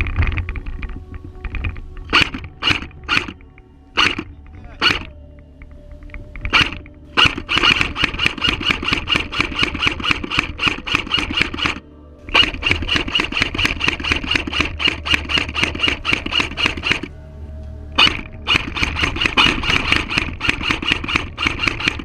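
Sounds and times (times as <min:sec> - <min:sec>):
airsoft gun rapid shots: 0:02.1 - 0:03.4, 0:04.0 - 0:05.1, 0:06.5 - 0:17.1, 0:18.0 - 0:22.0.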